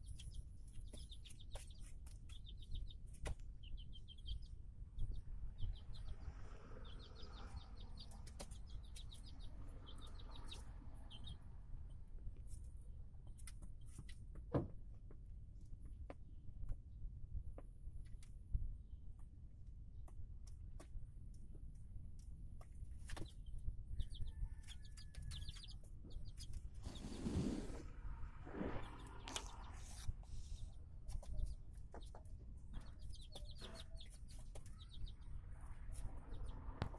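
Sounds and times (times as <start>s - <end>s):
chicks peeping: 0.0s - 12.6s, 22.6s - 27.8s, 28.5s - 36.9s.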